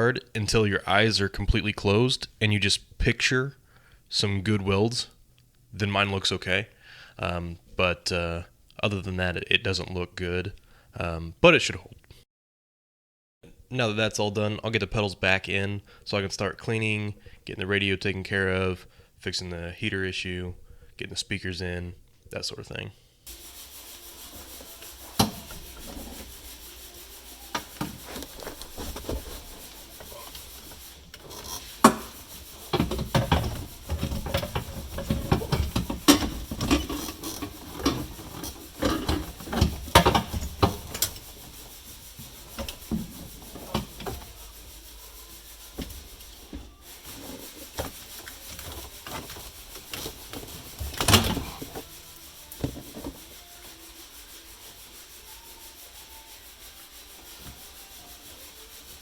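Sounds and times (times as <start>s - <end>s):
tools clunking and scraping metal: 27.5s - 41.6s, 45.7s - 51.9s.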